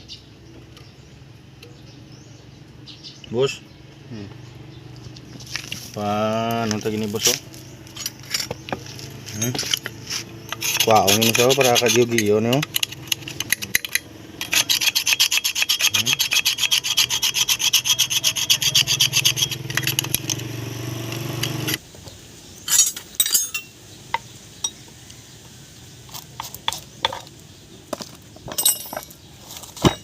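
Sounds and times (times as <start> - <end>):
rapid back-and-forth scraping: 5.3 - 20.3.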